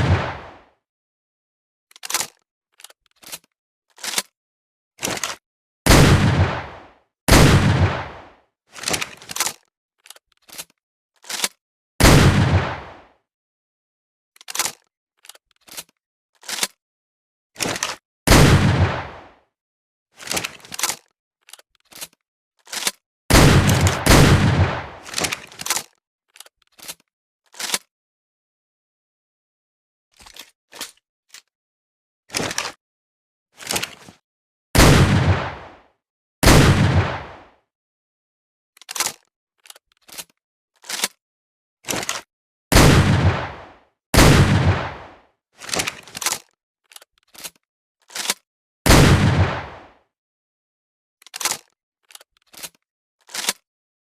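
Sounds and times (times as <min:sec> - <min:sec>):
shotgun shots: 0:00.0 - 0:00.6, 0:05.9 - 0:08.2, 0:12.0 - 0:13.0, 0:18.3 - 0:19.2, 0:23.3 - 0:25.4, 0:34.8 - 0:35.8, 0:36.4 - 0:37.4, 0:42.7 - 0:45.2, 0:48.9 - 0:49.9
gun handling clicks: 0:01.9 - 0:04.3, 0:20.2 - 0:27.9, 0:38.8 - 0:41.2, 0:45.6 - 0:48.4, 0:51.2 - 0:53.6
shotgun action clicks: 0:22.7 - 0:25.9.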